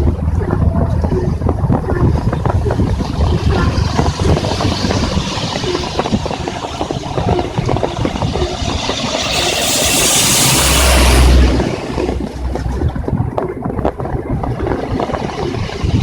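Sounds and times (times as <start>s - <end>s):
highway traffic rumble: 0.0s - 16.0s
tyres hissing on wet road: 8.8s - 12.2s.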